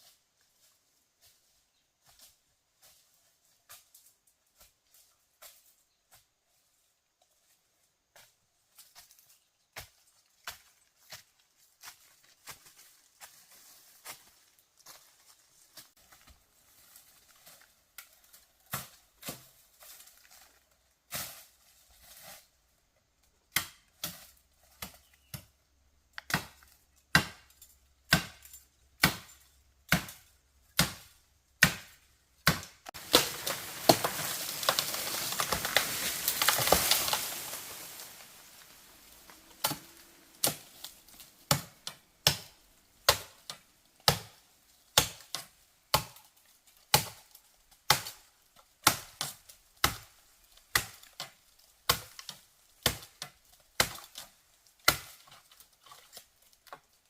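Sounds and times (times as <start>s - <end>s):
chopping strikes: 26.2s - 27.4s, 28.1s - 29.3s, 29.9s - 30.2s, 30.8s - 38.0s, 39.6s - 43.3s.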